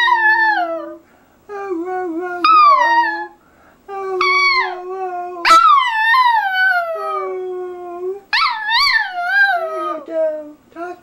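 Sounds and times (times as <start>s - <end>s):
dog howling: 0.0s - 1.0s, 2.4s - 3.4s, 4.2s - 10.0s
person coaxing: 0.0s - 8.3s, 9.0s - 11.0s.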